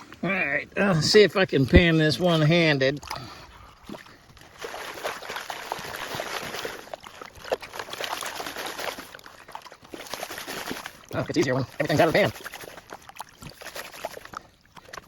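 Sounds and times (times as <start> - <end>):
water sloshing in a pan: 1.7 - 15.0
gravel rattling against a pan: 10.0 - 14.4.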